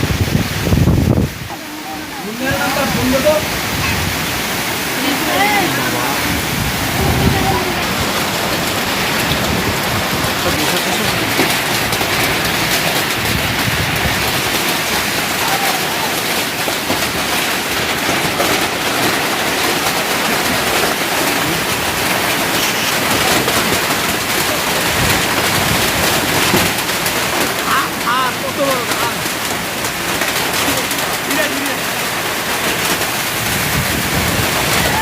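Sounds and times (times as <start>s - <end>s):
hail and rain clattering: 0.0s - 35.0s.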